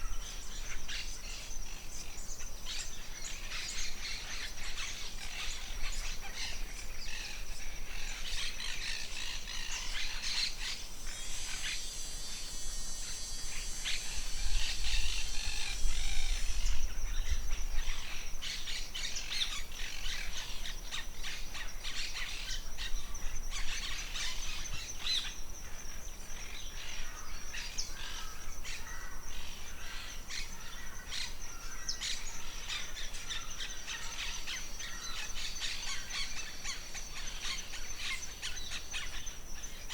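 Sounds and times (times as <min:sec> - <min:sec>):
dense high hiss: 0:00.0 - 0:30.5
birds chirping and calling: 0:00.0 - 0:39.9.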